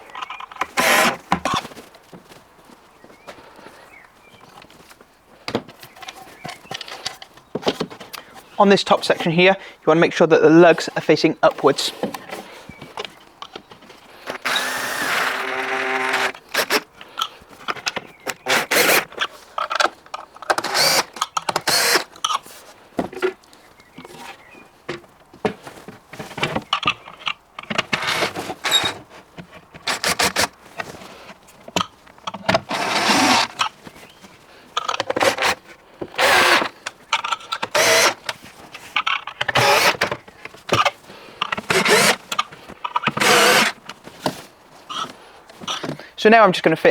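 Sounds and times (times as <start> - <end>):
cordless drill whining: 0.5 - 1.6, 14.2 - 17.0, 18.3 - 19.2, 20.5 - 22.4, 28.0 - 29.0, 29.8 - 30.6, 32.6 - 33.7, 35.0 - 35.6, 36.2 - 36.9, 37.5 - 38.4, 39.4 - 40.9, 41.5 - 42.4, 43.0 - 43.8.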